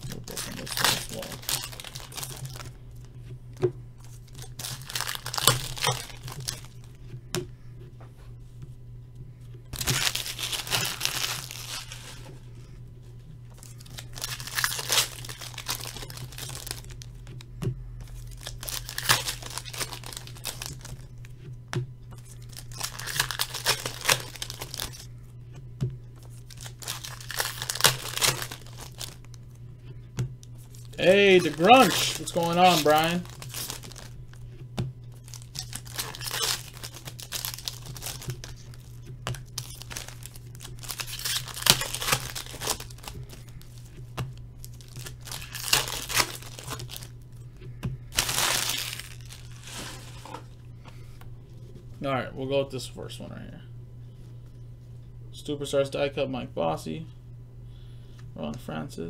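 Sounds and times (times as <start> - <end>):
card packs torn and crinkled: 0.0 - 2.7, 4.0 - 6.9, 9.8 - 12.3, 13.5 - 17.4, 18.0 - 21.3, 22.2 - 25.1, 26.2 - 29.4, 30.6 - 34.2, 35.2 - 44.0, 44.6 - 47.3, 48.1 - 50.3
low electrical hum: 0.0 - 59.0.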